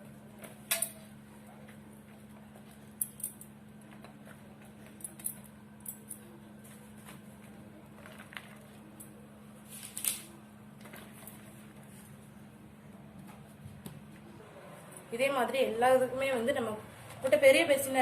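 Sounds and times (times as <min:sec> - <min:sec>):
steady low hum: 0:00.0 - 0:18.0
vegetables clicking and rustling: 0:07.0 - 0:09.0.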